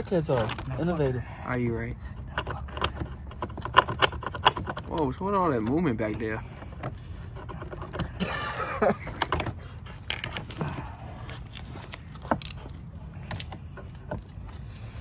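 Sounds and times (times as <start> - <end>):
clicks and knocks of parts handled: 0.0 - 1.1, 2.2 - 15.0
person speaking: 0.0 - 3.4, 4.8 - 6.8
garage background noise: 0.0 - 15.0.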